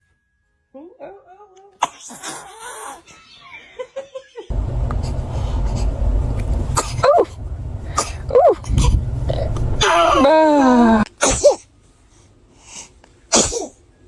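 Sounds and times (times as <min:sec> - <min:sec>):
baby sneezing: 0:01.8 - 0:02.8, 0:11.0 - 0:11.7, 0:13.3 - 0:13.8
low rumble: 0:04.5 - 0:11.1.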